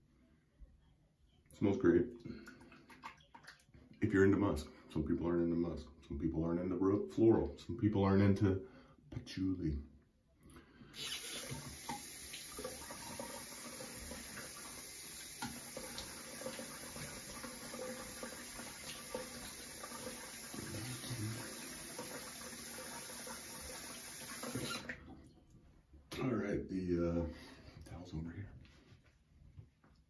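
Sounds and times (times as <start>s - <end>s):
sink tap running water: 11.0s - 25.0s.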